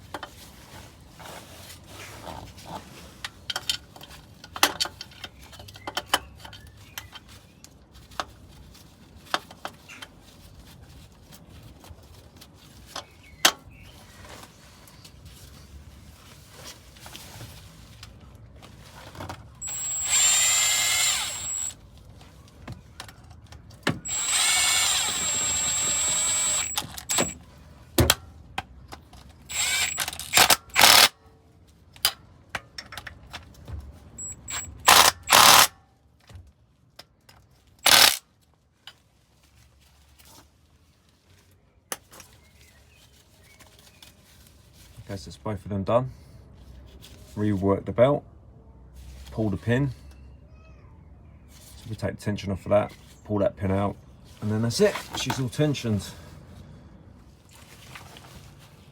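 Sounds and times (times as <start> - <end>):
power drill whining: 19.6 - 21.8, 24.0 - 27.4, 29.5 - 31.1, 34.2 - 35.7, 37.8 - 38.2
tools and metal parts clicking: 24.0 - 27.4, 29.5 - 31.1.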